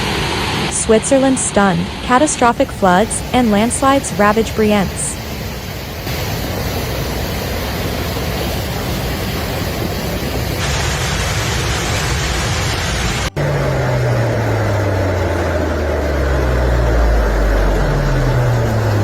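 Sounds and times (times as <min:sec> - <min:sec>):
roar of rushing water: 0:05.2 - 0:19.0.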